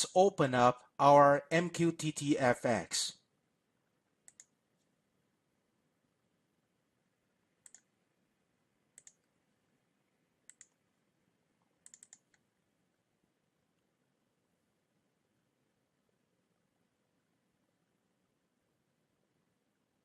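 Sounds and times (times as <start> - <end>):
computer mouse clicks: 4.2 - 4.6, 7.6 - 7.9, 9.0 - 9.4, 10.4 - 10.8, 11.8 - 12.5.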